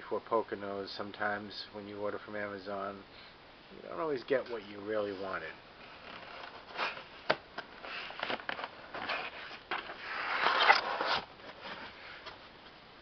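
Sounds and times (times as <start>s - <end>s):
rasping cardboard rustle: 5.0s - 12.4s
cardboard box clicks and scrapes: 5.9s - 12.4s.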